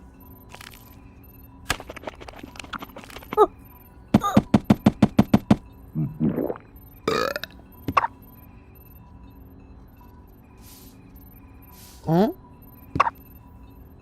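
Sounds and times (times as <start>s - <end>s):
quick run of knocks: 4.2s - 5.6s.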